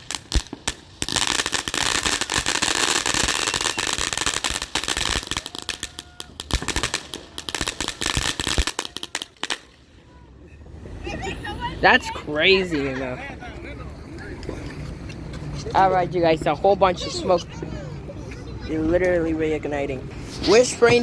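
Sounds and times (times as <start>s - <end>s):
firework fountain hissing and crackling: 0.0s - 10.0s.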